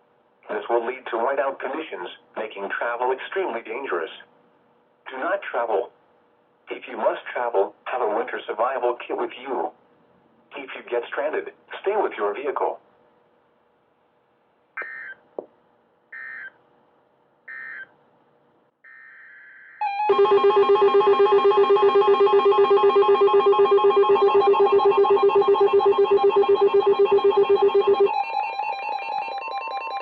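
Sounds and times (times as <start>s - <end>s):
electronic data bursts: 14.8s - 15.2s, 16.2s - 16.6s, 17.5s - 17.9s.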